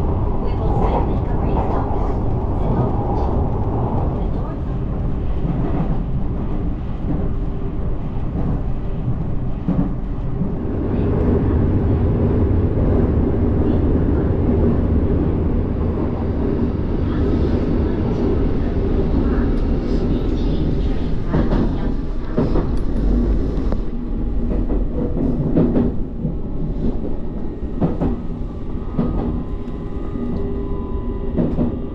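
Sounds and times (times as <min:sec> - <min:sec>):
train wheels rumbling on rail: 0:00.0 - 0:31.9.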